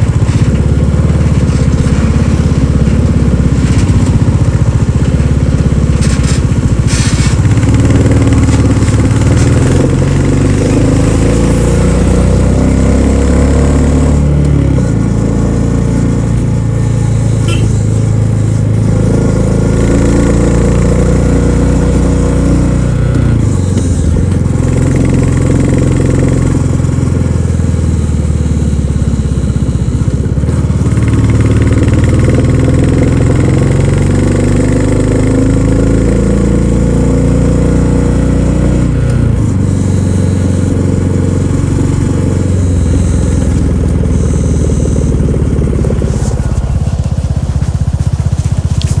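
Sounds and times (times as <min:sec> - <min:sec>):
motorcycle engine thumping: 0:00.0 - 0:11.5, 0:14.2 - 0:20.2, 0:22.8 - 0:35.8, 0:38.4 - 0:49.0.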